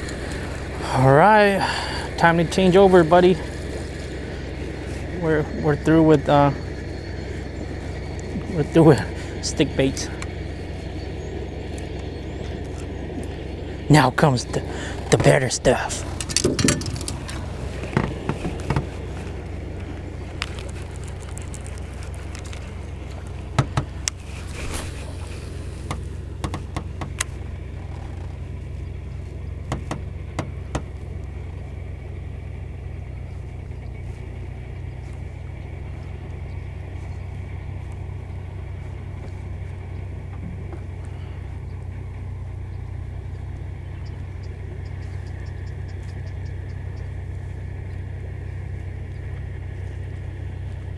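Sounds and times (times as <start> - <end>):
boat motor humming: 0.0 - 50.9
light clicks and knocks: 16.0 - 24.2, 29.6 - 31.0.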